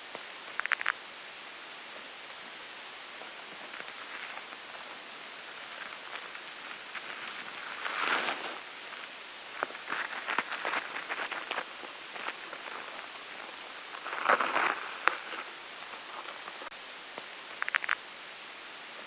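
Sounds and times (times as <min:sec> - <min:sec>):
rustling hiss: 0:00.0 - 0:19.0
faint ticks: 0:00.1 - 0:01.0, 0:15.0 - 0:18.0
sharp clicks: 0:00.6 - 0:01.0, 0:17.6 - 0:18.0.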